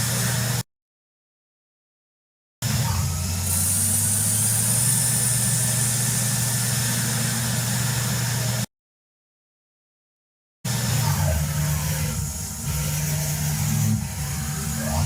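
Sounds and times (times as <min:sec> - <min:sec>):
motor humming: 0:02.6 - 0:08.6, 0:10.7 - 0:15.0.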